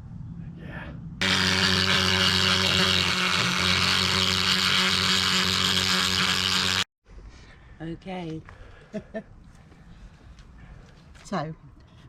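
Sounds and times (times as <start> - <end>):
rotary grinding tool grinding metal: 1.2 - 6.9.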